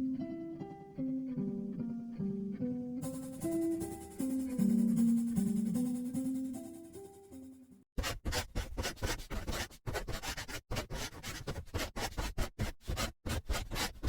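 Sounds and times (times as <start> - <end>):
scratching and rubbing: 8.0 - 14.0.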